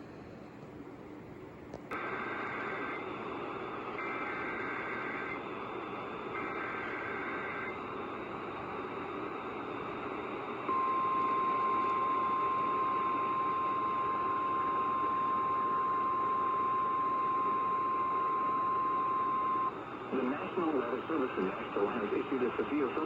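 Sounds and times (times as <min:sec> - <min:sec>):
radio static: 0:01.9 - 0:10.8, 0:19.2 - 0:23.0.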